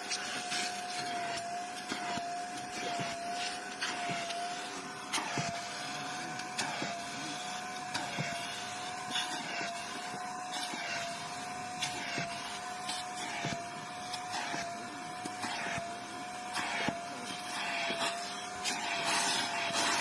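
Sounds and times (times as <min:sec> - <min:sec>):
vacuum cleaner whining: 0:00.0 - 0:20.0.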